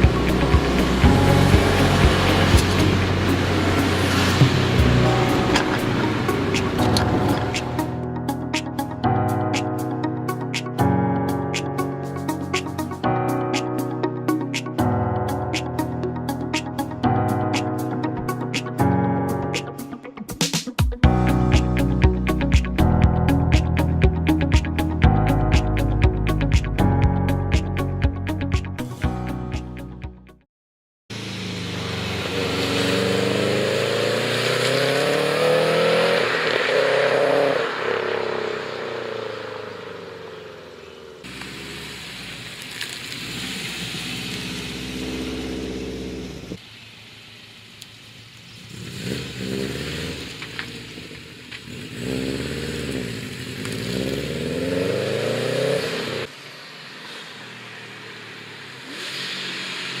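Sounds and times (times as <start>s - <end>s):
car engine revving through gears: 0.0s - 7.8s, 31.2s - 40.5s, 44.8s - 46.6s, 48.7s - 60.0s.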